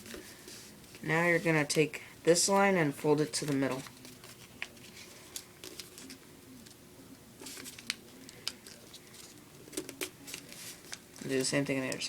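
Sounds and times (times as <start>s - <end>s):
paper rustling: 2.5s - 6.8s, 7.4s - 12.0s.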